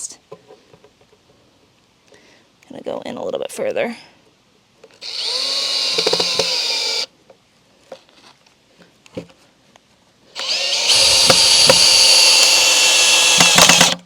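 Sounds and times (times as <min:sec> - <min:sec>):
power drill boring into wood: 0:05.0 - 0:07.1, 0:10.4 - 0:14.0.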